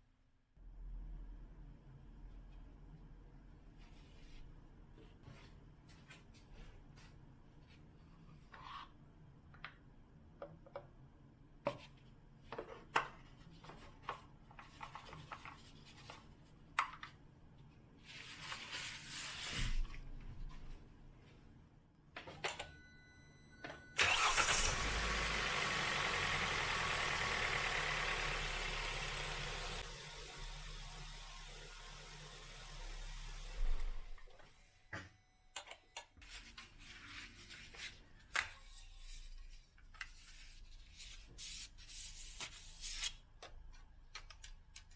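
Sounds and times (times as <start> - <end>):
car engine starting and idling: 24.0 - 34.2.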